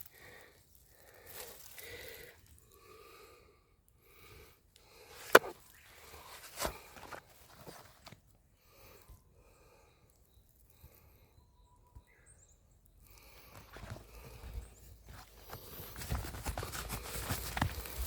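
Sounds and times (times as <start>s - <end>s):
man breathing heavily: 0.0s - 7.2s.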